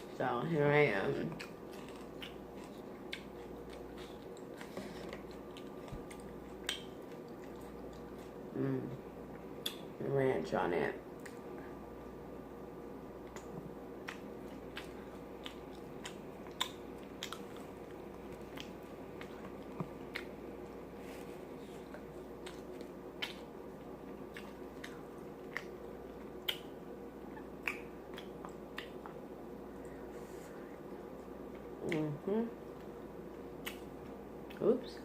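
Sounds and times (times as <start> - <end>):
person chewing with lip smacks: 1.3 - 8.4, 9.3 - 9.9, 13.2 - 29.2, 32.7 - 34.6.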